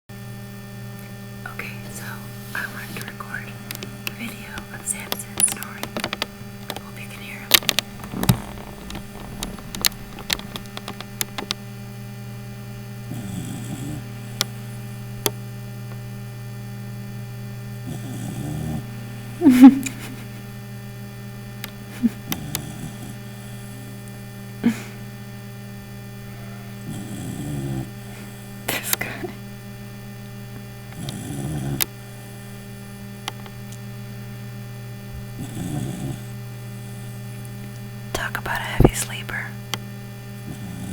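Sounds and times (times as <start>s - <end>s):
steady electrical hum: 0.1s - 40.9s
pet snoring softly: 1.5s - 11.6s, 13.0s - 15.0s, 17.8s - 20.3s, 21.9s - 25.0s, 26.2s - 29.4s, 30.9s - 32.6s, 35.2s - 37.5s, 40.4s - 40.9s
sharp clicks: 2.5s - 11.6s.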